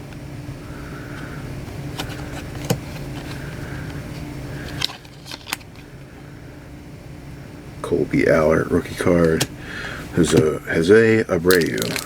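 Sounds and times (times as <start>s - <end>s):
mechanical hum: 0.0s - 12.0s
trading cards snapping: 11.5s - 12.0s.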